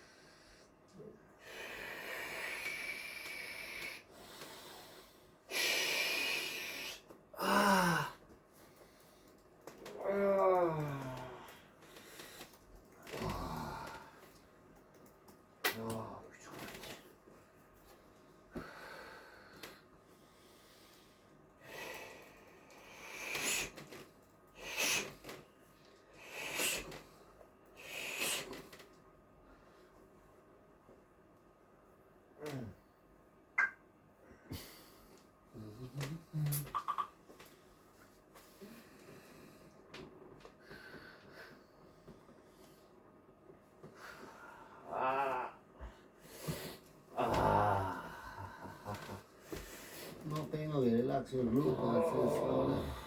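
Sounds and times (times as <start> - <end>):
quiet breathing: 0.0 - 9.7, 10.8 - 15.1, 16.4 - 30.1, 37.6 - 51.2
person hissing breaths: 1.4 - 7.0, 26.2 - 27.0, 27.8 - 28.6
person groaning: 7.4 - 8.2, 13.2 - 14.1, 44.9 - 45.6, 47.2 - 49.2, 51.5 - 53.0
person breathing heavily: 43.9 - 50.2.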